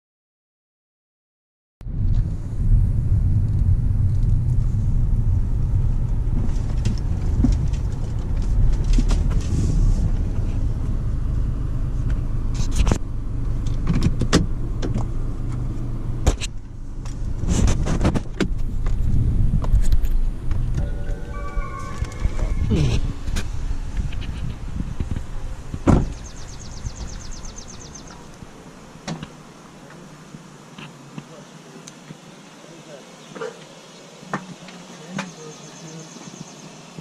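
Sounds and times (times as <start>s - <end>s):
car road and engine rumble: 1.8s - 21.0s, 22.5s - 30.6s.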